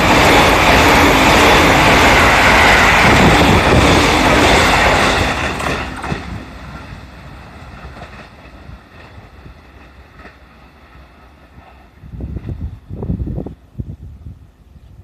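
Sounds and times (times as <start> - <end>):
electric train rail noise: 0.0 - 15.0.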